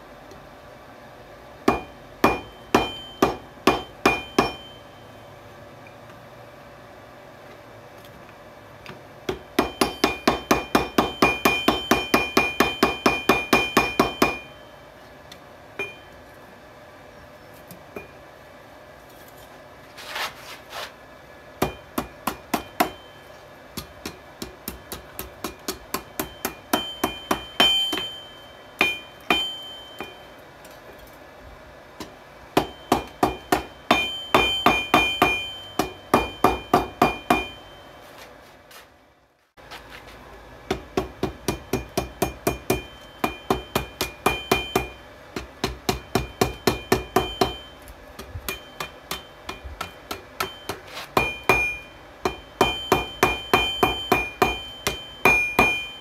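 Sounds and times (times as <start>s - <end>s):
hammer striking anvil: 1.6s - 5.0s, 9.3s - 14.7s, 21.6s - 30.4s, 32.0s - 37.9s, 40.7s - 56.0s.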